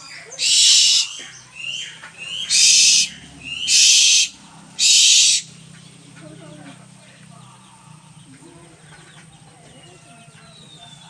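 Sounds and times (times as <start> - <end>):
owl screeching: 0.0 - 5.5.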